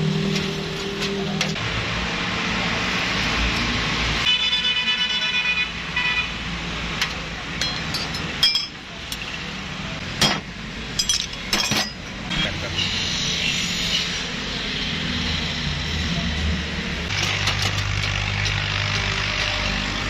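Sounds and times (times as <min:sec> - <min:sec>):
passing road traffic: 0:00.0 - 0:20.0
vehicle horn tooting: 0:04.2 - 0:06.3.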